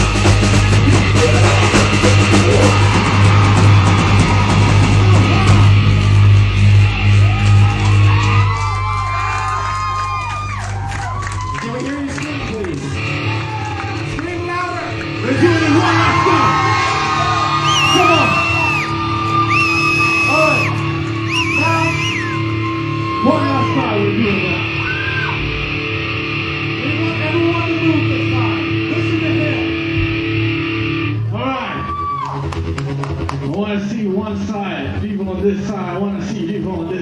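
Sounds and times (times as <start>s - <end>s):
electric guitars holding long notes: 0.0s - 37.0s
live rock band playing: 0.0s - 37.0s
yelled vocal: 0.7s - 5.8s.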